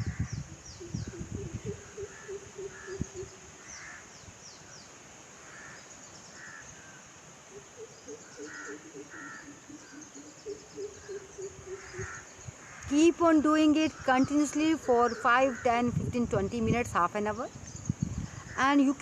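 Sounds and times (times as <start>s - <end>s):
birds cawing: 0.0s - 0.4s, 1.6s - 4.2s, 5.4s - 7.1s, 7.8s - 15.9s.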